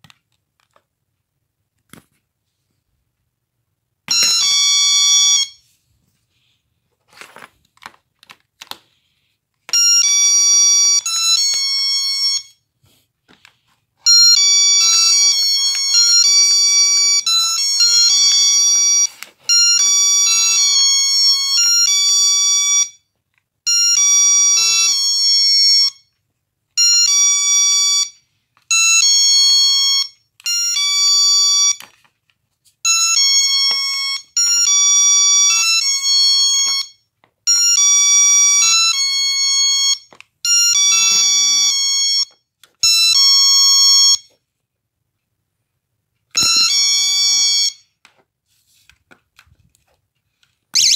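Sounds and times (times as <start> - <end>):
door alarm electronic tones: 4.1 - 5.6, 9.7 - 12.6, 14.1 - 23.1, 23.7 - 26.0, 26.8 - 31.8, 32.9 - 44.4, 46.4 - 47.9.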